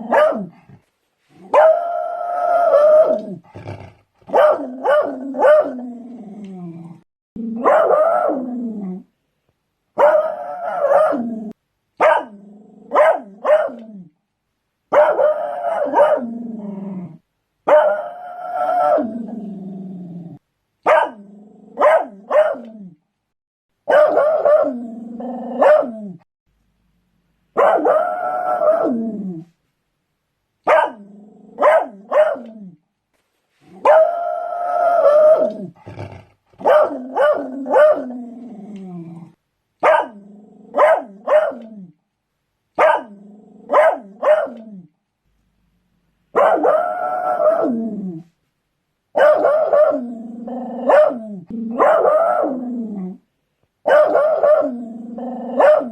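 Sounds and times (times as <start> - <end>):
dog barking and baying: 0.0 - 0.6, 1.5 - 3.2, 4.3 - 5.8, 7.6 - 8.4, 10.0 - 11.3, 12.0 - 13.9, 14.9 - 16.3, 17.7 - 19.1, 20.8 - 21.2, 21.8 - 22.7, 23.9 - 24.8, 25.6 - 26.0, 27.6 - 29.0, 30.7 - 31.0, 31.6 - 32.6, 33.8 - 34.3, 36.6 - 38.1, 39.8 - 41.7, 42.8 - 43.1, 43.7 - 44.6, 46.4 - 47.7, 49.2 - 50.0, 50.8 - 52.6, 53.9 - 54.7, 55.5 - 55.9.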